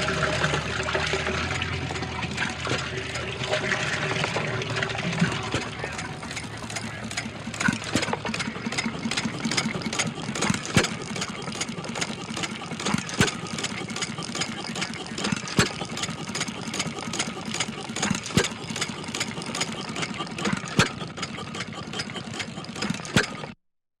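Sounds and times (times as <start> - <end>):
small gasoline engine running: 0.0 - 23.6
sharp clicks: 5.4 - 23.5.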